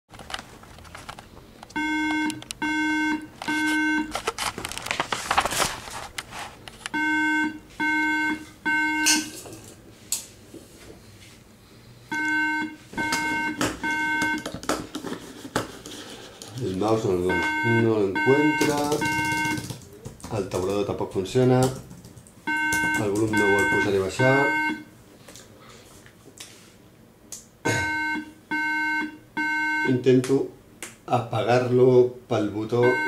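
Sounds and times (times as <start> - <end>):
computer short beeps: 17.3 - 19.6, 22.5 - 24.9, 27.7 - 30.0.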